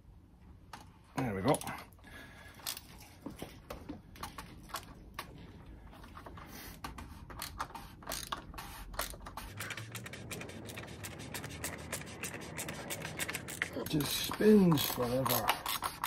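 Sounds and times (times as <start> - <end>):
ratchet clicking: 7.4 - 16.0.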